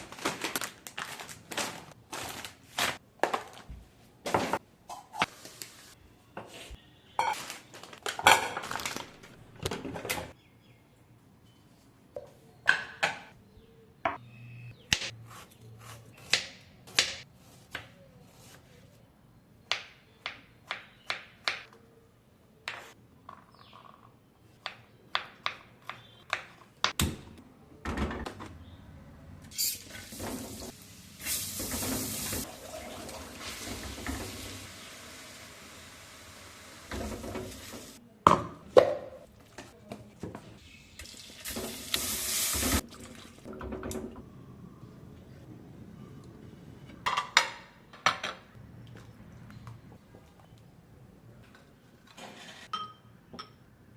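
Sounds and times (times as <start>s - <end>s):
utensils and dishes clinking: 52.2s - 53.7s.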